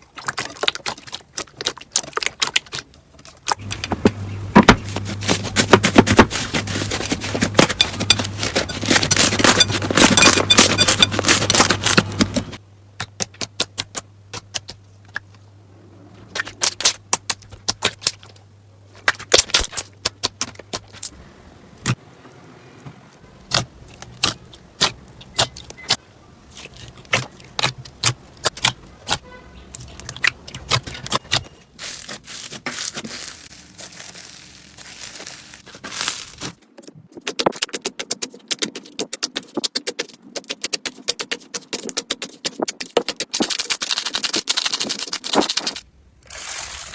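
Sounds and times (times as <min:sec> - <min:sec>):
slime crackling and popping: 0:29.8 - 0:36.6.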